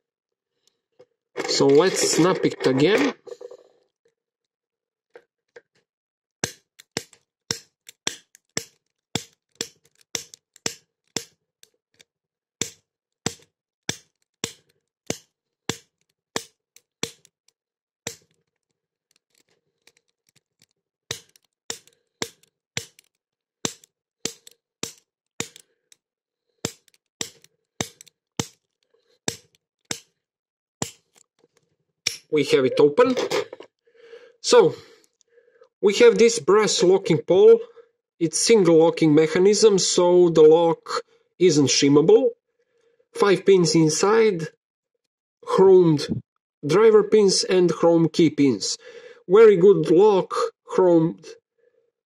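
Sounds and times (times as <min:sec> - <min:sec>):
pick gun snapping on lock: 0:06.4 - 0:11.7, 0:12.6 - 0:17.4, 0:18.1 - 0:25.7, 0:26.6 - 0:30.1, 0:30.8 - 0:31.3, 0:32.1 - 0:32.3.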